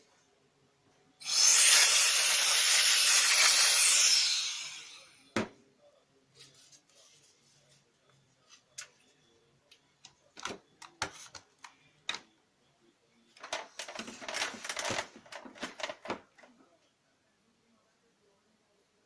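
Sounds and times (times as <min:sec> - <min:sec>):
printer parts clicking and knocking: 0:13.4 - 0:16.4.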